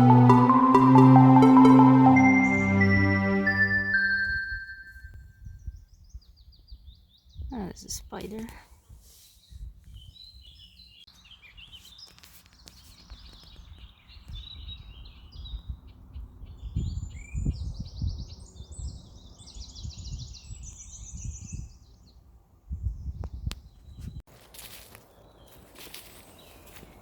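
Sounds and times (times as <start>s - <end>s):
songbirds singing: 5.5s - 24.2s, 25.0s - 27.0s.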